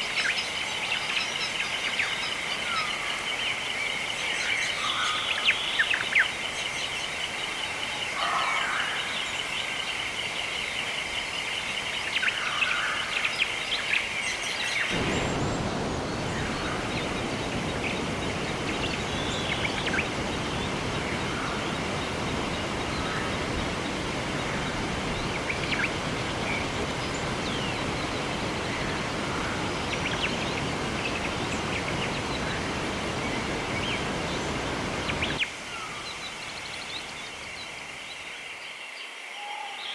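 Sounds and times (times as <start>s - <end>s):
running water: 0.0s - 38.8s
birds chirping: 0.0s - 39.9s.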